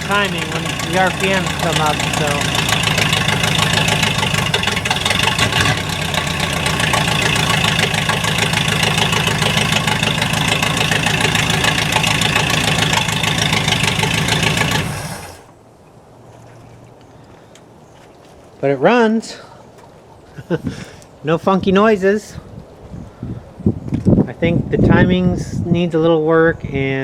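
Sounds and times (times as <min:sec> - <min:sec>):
car engine running loudly: 0:00.0 - 0:15.5.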